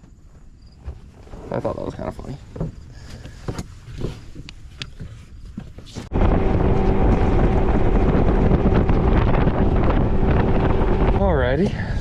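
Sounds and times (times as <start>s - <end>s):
wind buffeting microphone: 6.0s - 12.0s
low steady hum: 6.1s - 12.0s.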